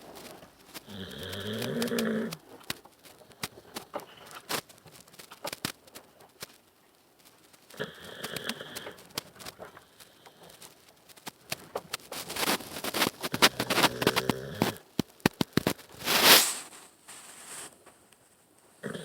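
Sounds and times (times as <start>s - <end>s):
animal snoring loudly: 0.8s - 2.4s, 7.7s - 9.0s, 13.4s - 14.8s, 18.8s - 19.0s.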